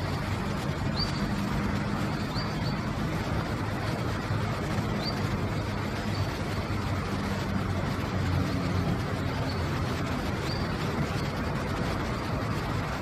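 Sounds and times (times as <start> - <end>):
high bird chirps: 0.8 - 1.4, 2.1 - 2.8.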